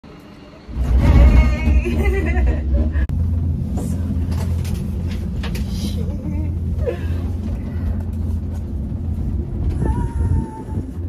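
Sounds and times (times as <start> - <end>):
vehicle rumbling: 0.1 - 11.0
indistinct voices: 0.7 - 3.1.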